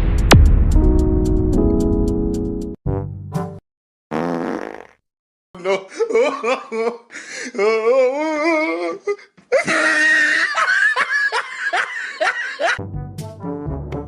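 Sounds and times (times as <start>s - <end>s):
high-pitched laughter: 9.5s - 12.8s
brass music: 12.8s - 14.0s.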